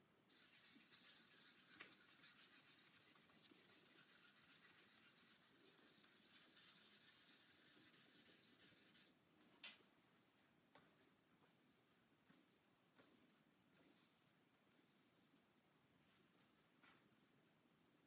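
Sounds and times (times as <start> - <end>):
sandpaper rubbing hiss: 0.3 - 9.1.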